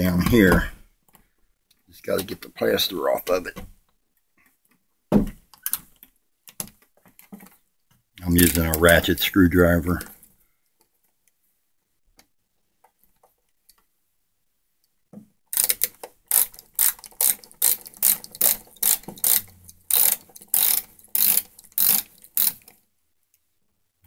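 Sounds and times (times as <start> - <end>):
ratchet screwdriver clicking: 15.6 - 22.8.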